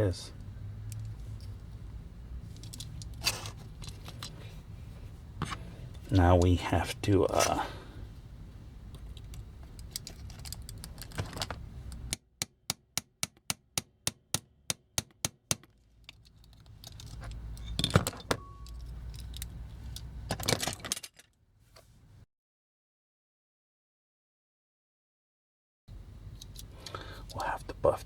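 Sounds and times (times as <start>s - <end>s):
toy parts clicking and rattling: 2.5s - 4.5s, 8.9s - 12.2s, 15.7s - 21.3s.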